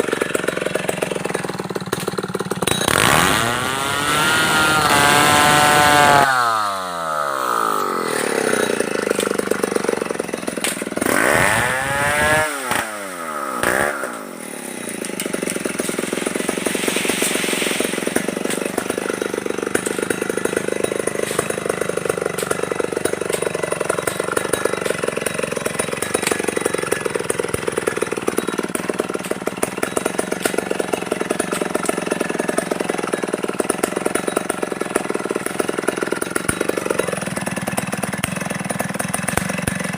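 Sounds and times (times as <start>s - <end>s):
chainsaw revving and idling: 0.0s - 39.9s.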